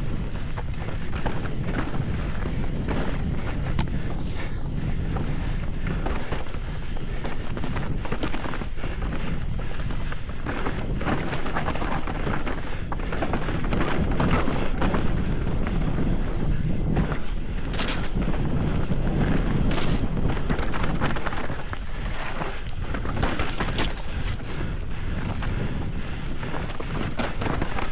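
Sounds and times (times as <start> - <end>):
bike rattling and knocking: 0.0 - 27.9
wind buffeting microphone: 0.0 - 27.9.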